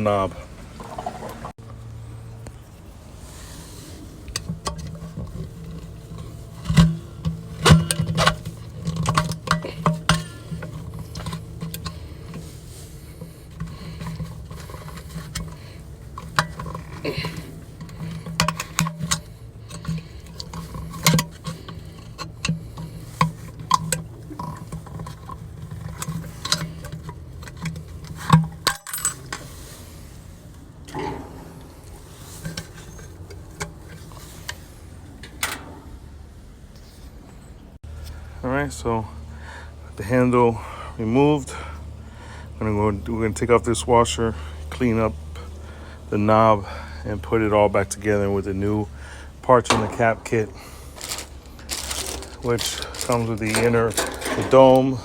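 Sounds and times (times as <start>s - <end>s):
steady low hum: 0.0s - 55.0s
clicks taps and scrapes: 4.2s - 29.5s.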